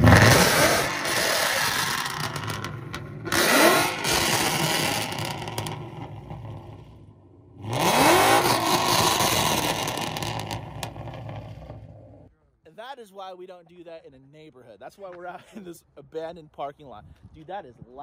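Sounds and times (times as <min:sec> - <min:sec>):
loud car engine revving: 0:00.0 - 0:12.3.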